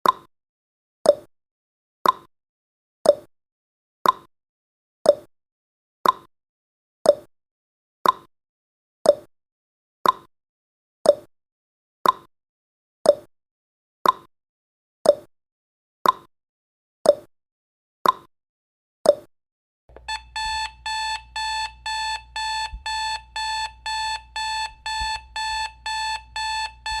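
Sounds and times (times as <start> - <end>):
timer ticking: 19.9 - 27.0
alarm clock beeping rapidly: 20.0 - 27.0.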